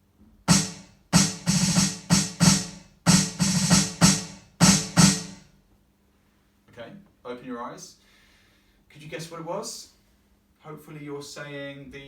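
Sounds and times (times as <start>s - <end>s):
electronic snare drum hits: 0.5s - 5.5s.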